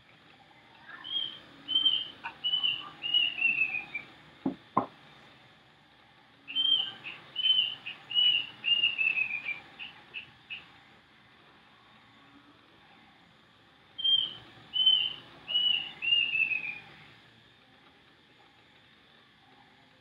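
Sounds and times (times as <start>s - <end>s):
bird whistling song: 0.9s - 4.2s, 6.5s - 10.7s, 14.0s - 16.9s
sharp knocks: 4.4s - 5.0s.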